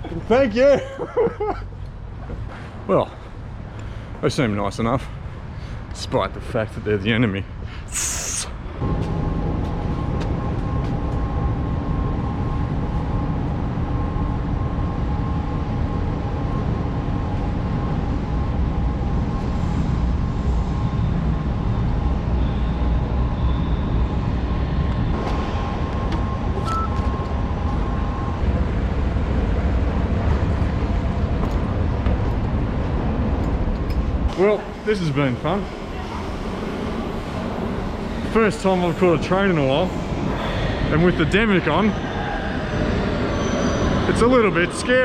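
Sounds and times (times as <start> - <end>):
low vehicle rumble: 8.6 - 44.2
faint whining tones: 8.7 - 45.0.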